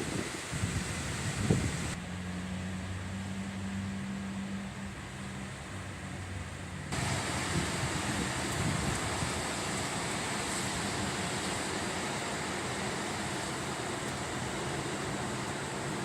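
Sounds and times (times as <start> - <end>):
rain in strong wind: 0.0 - 16.0.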